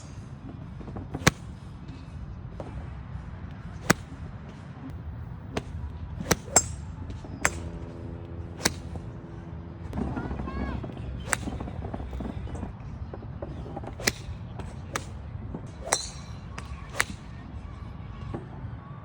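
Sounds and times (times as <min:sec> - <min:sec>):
golf clubs striking balls: 0:00.0 - 0:00.3, 0:01.1 - 0:02.0, 0:03.6 - 0:04.6, 0:05.2 - 0:10.0, 0:10.8 - 0:12.7, 0:13.4 - 0:17.4.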